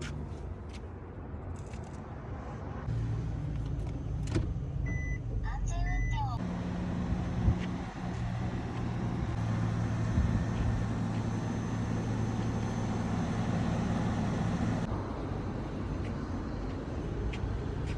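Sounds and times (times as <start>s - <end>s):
vehicle engine idling: 6.2s - 17.9s.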